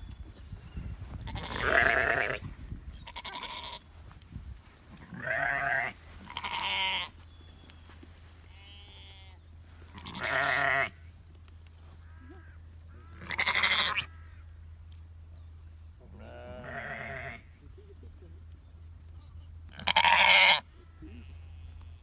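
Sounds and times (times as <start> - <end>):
livestock bleating: 1.1 - 3.9, 4.9 - 7.2, 8.4 - 11.0, 12.0 - 14.4, 16.1 - 17.5, 19.7 - 22.0.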